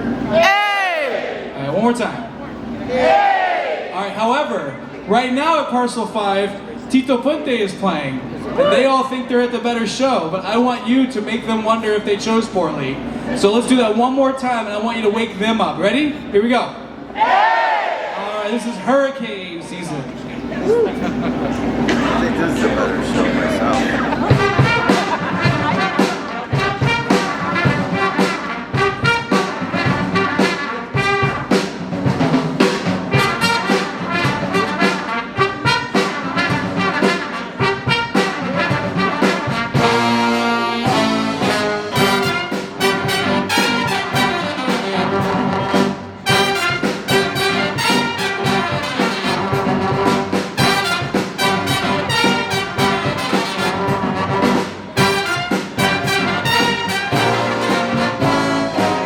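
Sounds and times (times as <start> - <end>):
jazz big band playing: 20.0 - 59.0.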